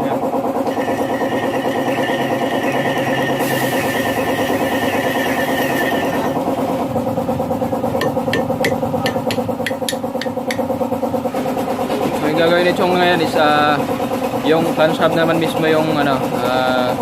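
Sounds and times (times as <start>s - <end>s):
high cutting whine: 0.1s - 11.3s
metal lathe running: 0.1s - 17.0s
sharp ticks: 8.0s - 10.7s.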